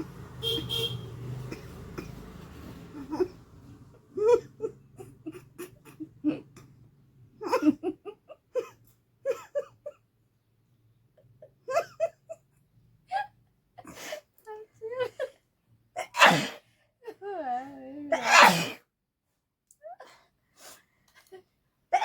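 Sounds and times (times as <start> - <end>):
woman laughing and giggling: 4.1 - 6.6, 7.4 - 10.0, 11.4 - 12.5, 14.0 - 15.4, 17.0 - 18.2.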